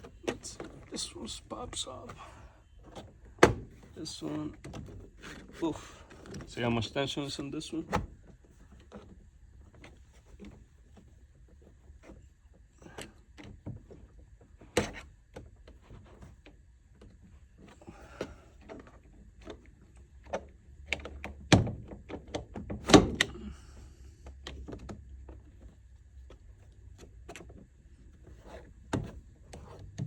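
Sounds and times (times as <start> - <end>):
loud thunks: 3.4 - 3.8.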